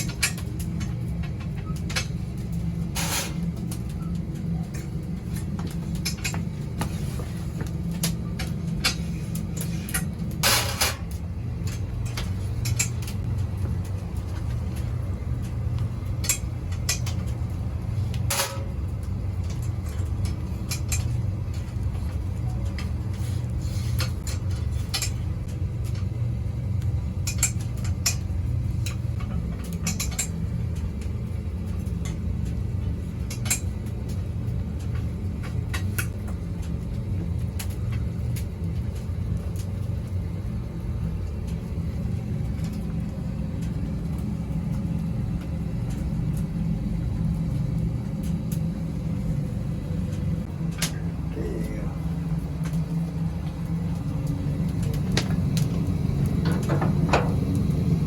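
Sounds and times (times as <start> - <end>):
low machine hum: 0.0 - 58.0.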